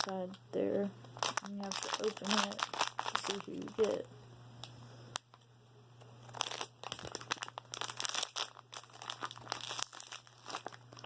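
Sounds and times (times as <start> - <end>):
plastic bag crinkling: 0.0 - 0.4, 1.2 - 4.1, 6.2 - 11.0.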